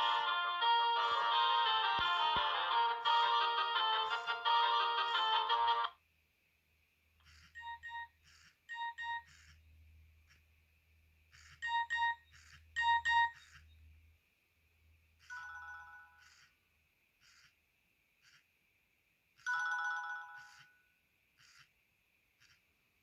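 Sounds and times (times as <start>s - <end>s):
electronic chord: 0.0s - 5.9s
phone ringtone electronic beeps: 0.0s - 5.9s, 12.8s - 13.4s.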